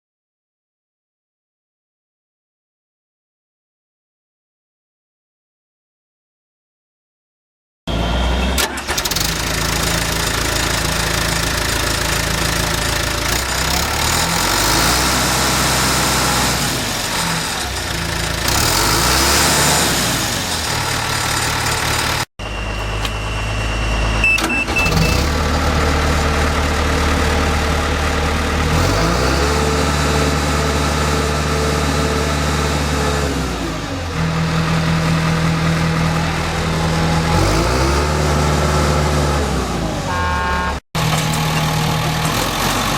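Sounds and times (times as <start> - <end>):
bulldozer diesel engine running: 7.9 - 42.9.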